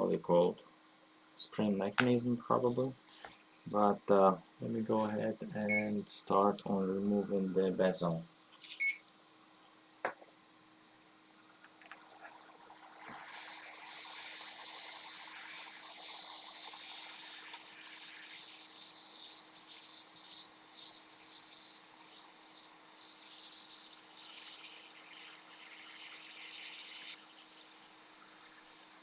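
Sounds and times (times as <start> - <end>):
steady low hum: 0.0 - 20.9.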